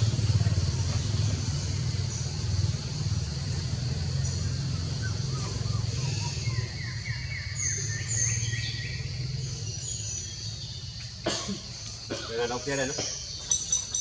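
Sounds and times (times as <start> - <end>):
bird chirps: 4.1 - 14.0.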